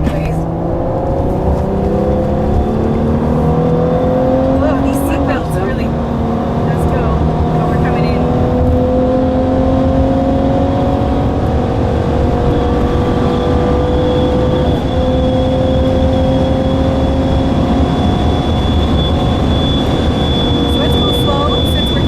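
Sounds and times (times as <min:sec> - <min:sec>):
car engine pulling heard from cabin: 0:00.0 - 0:22.0
thin high whine: 0:13.2 - 0:22.0.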